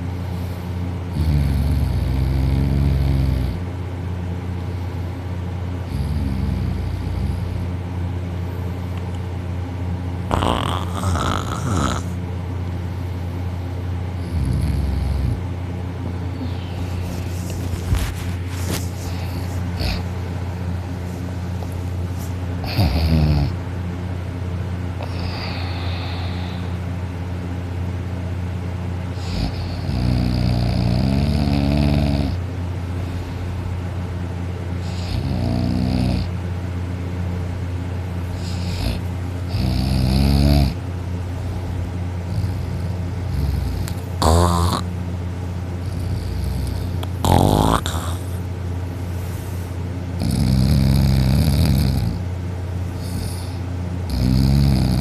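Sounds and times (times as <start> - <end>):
steady low hum: 0.0 - 55.0
person snoring heavily: 1.1 - 3.6, 5.8 - 7.7, 10.2 - 12.2, 14.2 - 15.4, 16.3 - 20.2, 22.6 - 23.6, 25.0 - 26.8, 29.1 - 32.4, 34.8 - 36.3, 38.4 - 40.8, 42.3 - 44.9, 45.8 - 48.5, 49.1 - 52.2, 53.0 - 55.0.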